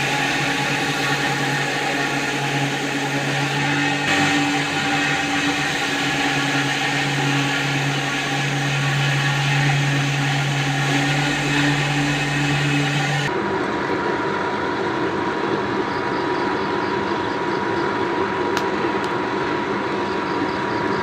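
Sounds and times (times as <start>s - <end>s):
power tool grinding: 0.0s - 13.3s
dull low machine sound: 0.0s - 21.0s.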